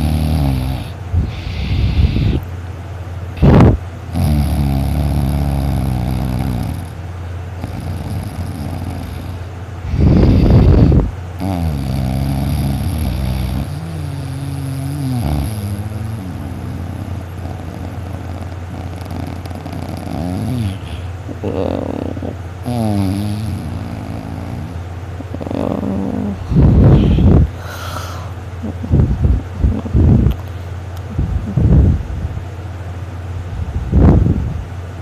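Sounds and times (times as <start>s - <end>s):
heavy snoring: 0.0s - 2.5s, 3.4s - 7.0s, 7.6s - 28.4s.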